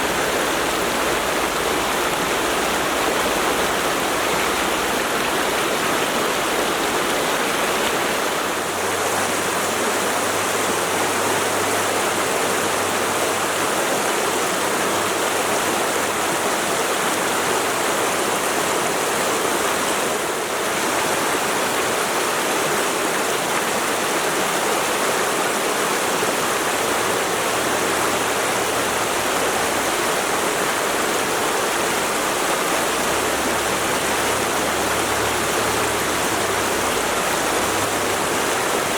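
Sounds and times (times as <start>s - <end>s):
stream rushing over rocks: 0.0s - 38.9s.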